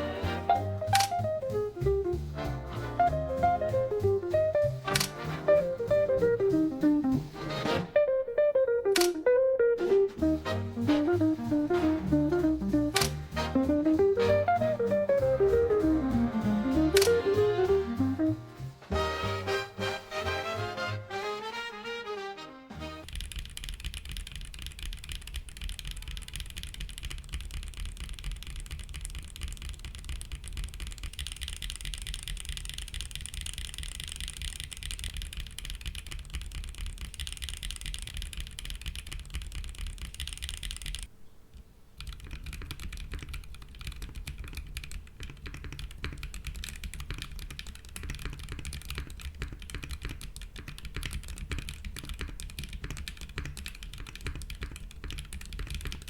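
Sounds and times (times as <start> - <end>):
fast typing on mechanical keyboard: 14.0 - 18.2, 23.0 - 41.1, 42.0 - 56.0.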